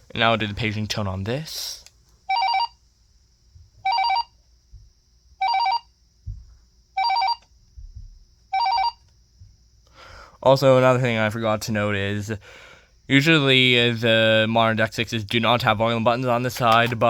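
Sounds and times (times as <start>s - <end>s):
cordless phone paging tone: 2.3s - 2.8s, 3.8s - 4.3s, 5.4s - 5.9s, 7.0s - 7.4s, 8.5s - 9.0s.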